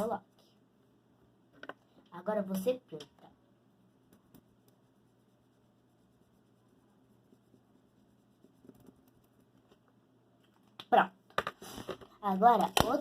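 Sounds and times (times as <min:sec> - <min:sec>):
marker pen scratching: 0:04.0 - 0:09.8.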